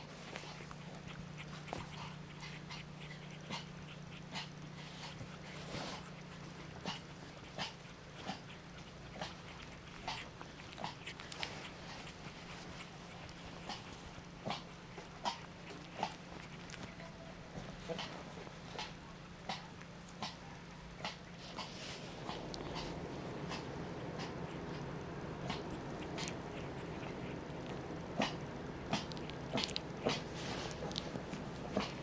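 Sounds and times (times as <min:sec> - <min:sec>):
steady low hum: 0:00.0 - 0:32.0
puppy clicks and taps: 0:12.6 - 0:18.2, 0:21.0 - 0:32.0.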